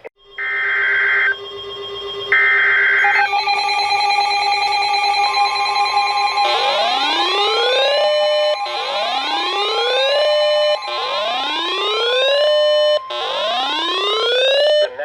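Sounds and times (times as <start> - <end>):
steady warning alarm tone: 0.2 - 15.0
whooping siren tone: 0.4 - 15.0.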